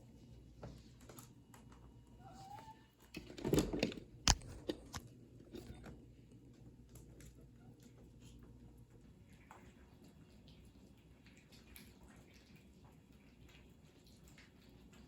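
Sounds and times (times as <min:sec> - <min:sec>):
cats crunching food: 0:03.1 - 0:15.0.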